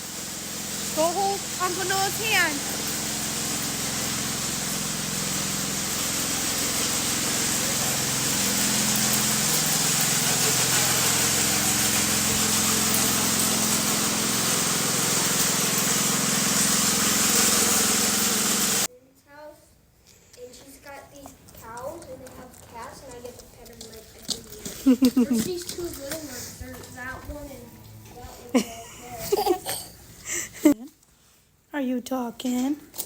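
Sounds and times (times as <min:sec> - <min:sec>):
heavy engine running: 0:00.0 - 0:18.9
loud constant rushing hiss: 0:00.0 - 0:18.9.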